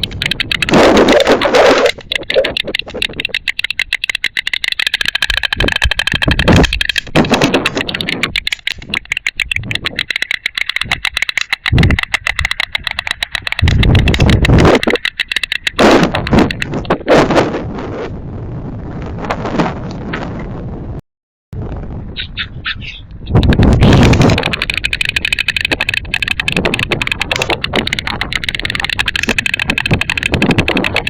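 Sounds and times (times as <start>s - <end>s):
storks clattering bills: 0.0s - 17.2s, 23.4s - 31.0s
wind rumble on microphone: 10.9s - 21.0s, 21.6s - 31.0s.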